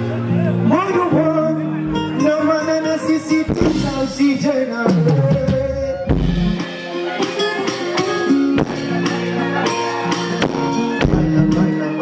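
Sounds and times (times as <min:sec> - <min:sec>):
guitar playing: 0:00.0 - 0:12.0
live band music: 0:00.0 - 0:12.0
person singing: 0:02.3 - 0:12.0
bass drum hit: 0:03.5 - 0:04.4.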